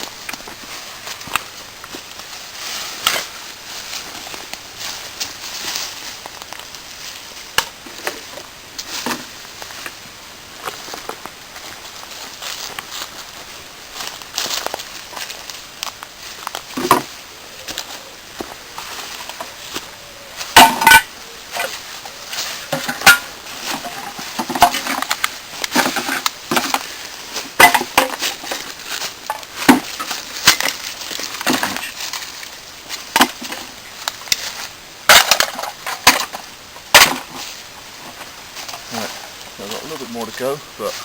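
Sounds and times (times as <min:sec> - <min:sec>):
rubbish clinking and crackling: 0:18.8 - 0:41.0.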